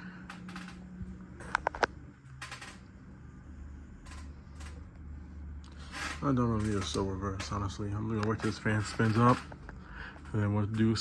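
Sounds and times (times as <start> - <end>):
ceiling fan motor humming: 0.0 - 11.0.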